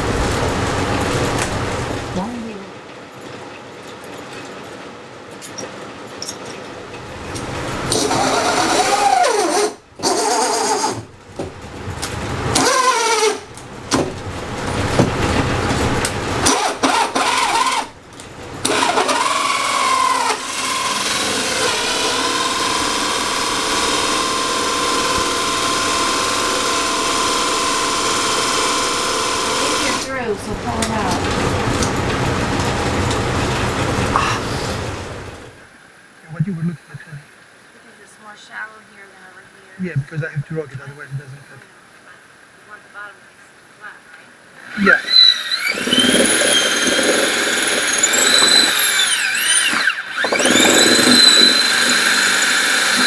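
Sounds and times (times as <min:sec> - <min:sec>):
power tool motor whining: 0:06.9 - 0:35.6, 0:44.6 - 0:53.0.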